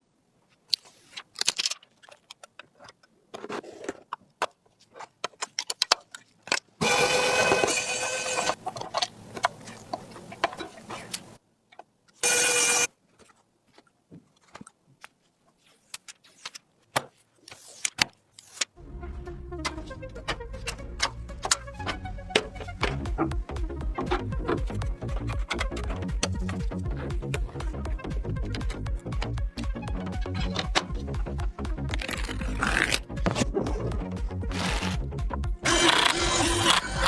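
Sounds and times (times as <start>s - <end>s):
computer parts clicking and rattling: 24.0s - 27.5s.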